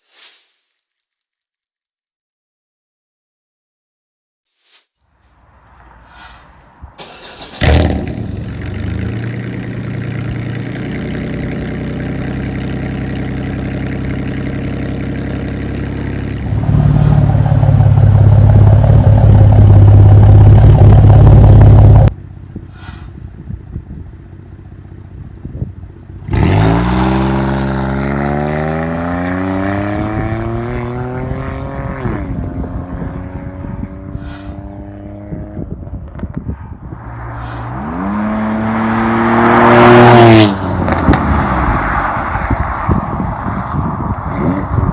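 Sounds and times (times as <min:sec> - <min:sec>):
exhaust pops: 0:07.0 - 0:24.4, 0:39.8 - 0:44.2
car exhaust revving: 0:07.0 - 0:44.9.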